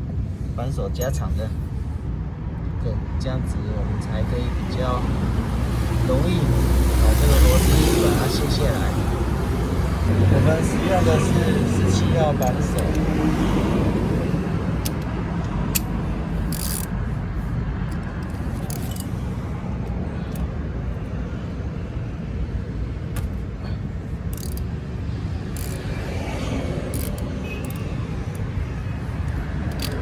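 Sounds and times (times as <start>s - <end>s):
road traffic rumble: 0.0s - 30.0s
wrench metallic clicks: 12.3s - 13.2s, 14.8s - 17.0s, 17.8s - 19.2s, 24.2s - 24.8s, 25.5s - 26.1s, 26.8s - 28.5s, 29.2s - 30.0s.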